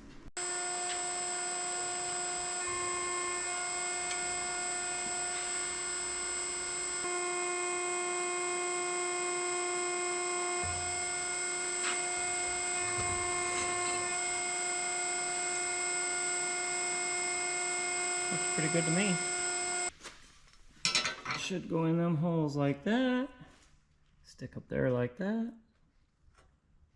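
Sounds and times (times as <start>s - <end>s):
steady machine whine: 0.4s - 19.9s.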